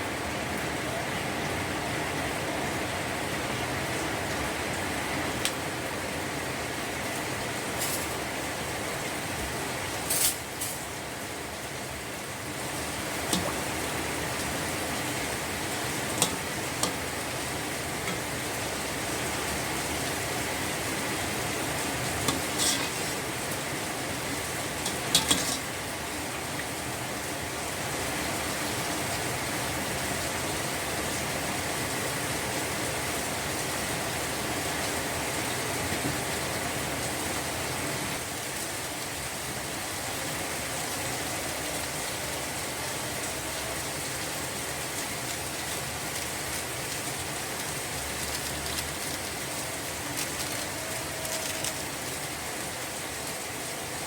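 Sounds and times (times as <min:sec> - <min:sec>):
food sizzling in a hot pan: 0:12.9 - 0:25.9.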